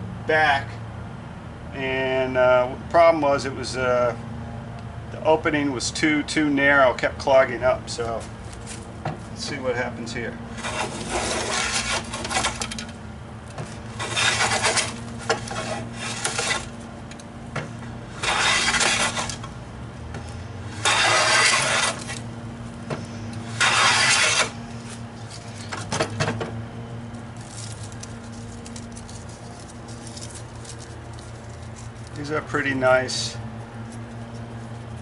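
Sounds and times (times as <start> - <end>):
hand plane shaving wood: 10.6 - 12.8, 13.8 - 16.8, 18.2 - 19.5, 20.7 - 22.2, 23.5 - 24.6.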